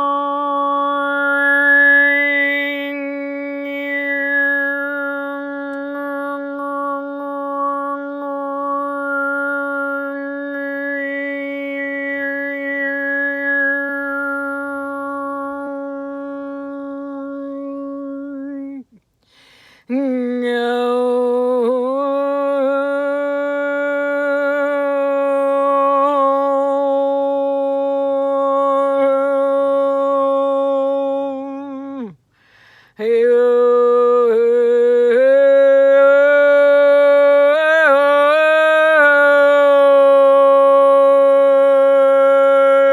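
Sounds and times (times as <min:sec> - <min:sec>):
woman toning long held notes: 0:00.0 - 0:18.8.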